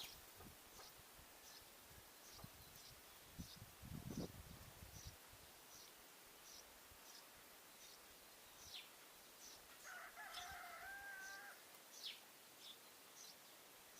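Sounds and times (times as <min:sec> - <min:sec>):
sparrows chirping: 0:00.0 - 0:13.9
faint rooster crowing: 0:09.7 - 0:11.8.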